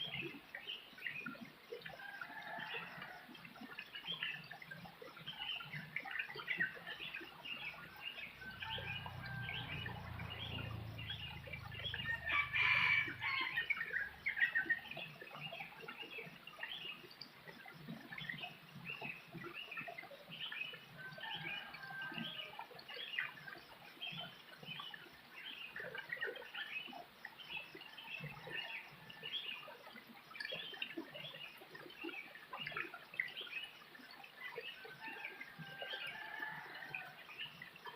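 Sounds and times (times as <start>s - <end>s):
rooster crowing: 8.4s - 11.4s, 12.0s - 13.7s.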